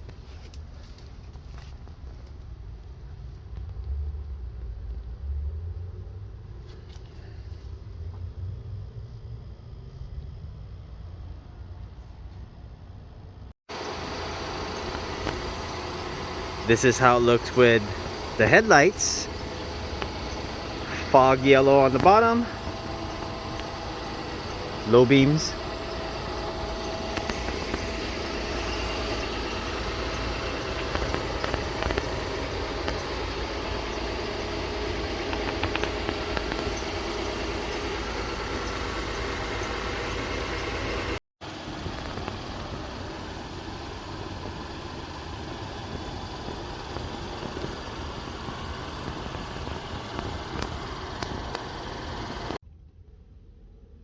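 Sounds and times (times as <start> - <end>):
car engine idling: 13.7 - 52.6.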